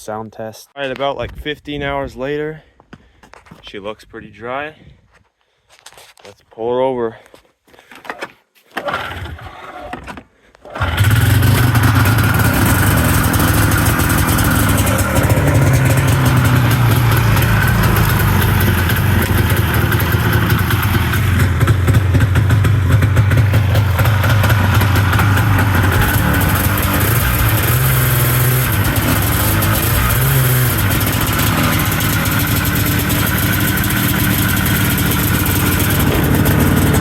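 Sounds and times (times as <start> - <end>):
motorcycle engine starting and idling: 8.8 - 9.6, 10.6 - 37.0.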